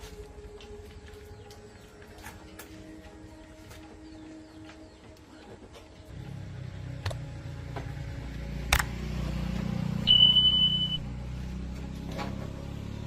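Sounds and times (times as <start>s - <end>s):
high electronic beep: 10.0s - 11.1s.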